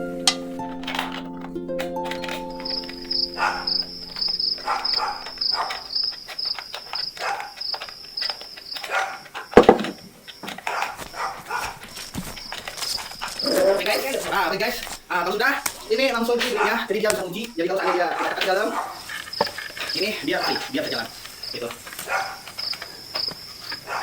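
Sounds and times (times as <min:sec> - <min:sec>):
cricket chirping: 0:00.4 - 0:24.0
loud knock: 0:09.6 - 0:10.1.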